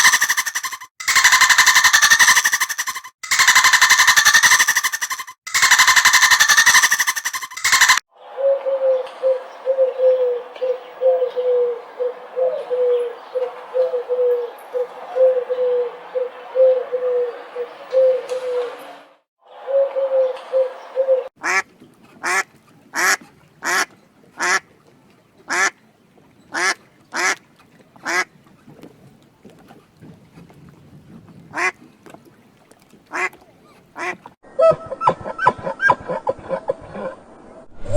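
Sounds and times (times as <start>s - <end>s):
ducks quacking: 0.0s - 8.0s, 21.4s - 24.7s, 25.5s - 25.8s, 26.5s - 27.4s, 28.0s - 28.3s, 31.5s - 31.8s, 33.1s - 34.4s.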